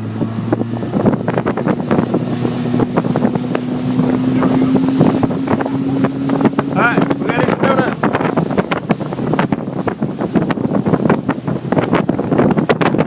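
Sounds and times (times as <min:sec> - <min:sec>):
motorboat engine running: 0:00.0 - 0:13.0
wind buffeting microphone: 0:00.0 - 0:13.0.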